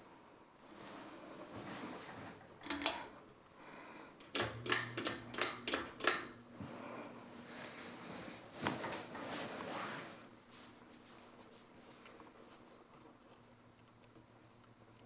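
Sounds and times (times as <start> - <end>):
sharp mechanical clicks: 2.6 - 3.0, 4.2 - 6.4.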